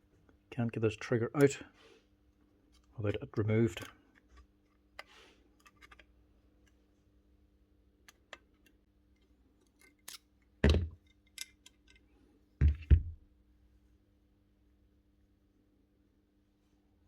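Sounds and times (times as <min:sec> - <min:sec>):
small parts clicking: 0:08.1 - 0:12.1
heavy thumps: 0:12.6 - 0:13.2.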